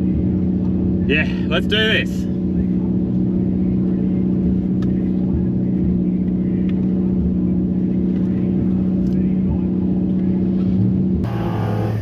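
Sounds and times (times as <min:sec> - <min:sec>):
car engine idling: 0:00.0 - 0:10.4, 0:11.2 - 0:12.0
faint engine ticks: 0:02.5 - 0:10.4.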